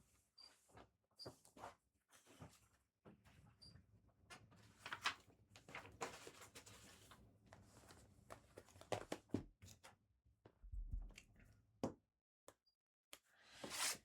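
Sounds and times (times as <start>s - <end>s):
cards sliding together: 13.5s - 14.0s.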